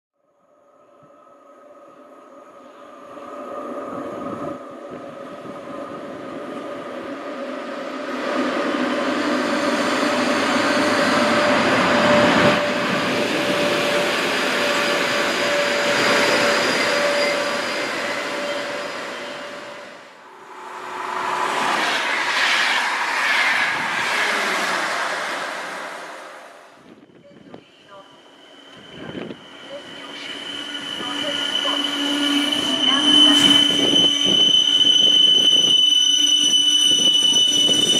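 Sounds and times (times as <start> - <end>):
rail noise: 0.5 - 37.9
train passing: 0.5 - 37.9
high whine: 8.3 - 37.9.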